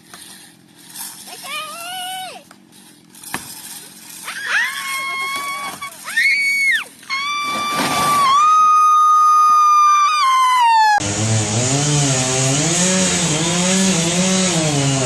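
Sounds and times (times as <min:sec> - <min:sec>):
chainsaw running at full throttle: 0:11.0 - 0:15.0
lower engine note: 0:11.0 - 0:15.0.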